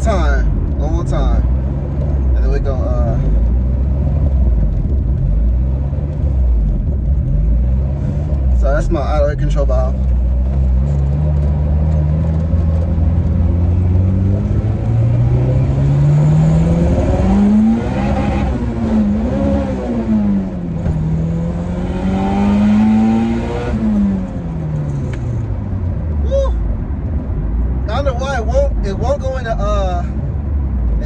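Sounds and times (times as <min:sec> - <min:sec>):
car engine revving hard: 0:10.5 - 0:24.6.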